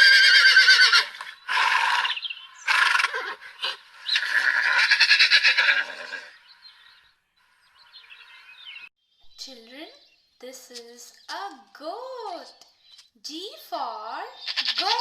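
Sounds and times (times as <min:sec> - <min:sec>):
horse neighing: 0:00.0 - 0:06.4.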